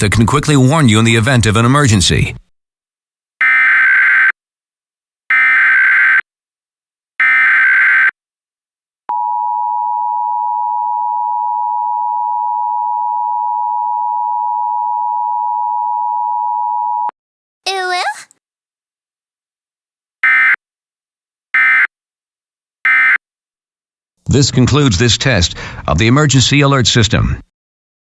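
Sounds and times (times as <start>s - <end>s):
person speaking: 17.7s - 18.3s
steady two-tone beep: 22.9s - 23.2s.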